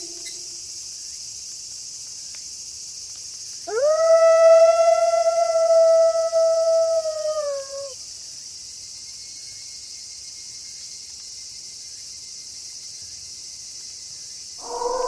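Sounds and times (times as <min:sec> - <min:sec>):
wolf howling: 0:00.0 - 0:00.5, 0:03.7 - 0:08.0, 0:14.6 - 0:15.0
crickets chirping: 0:00.0 - 0:15.0.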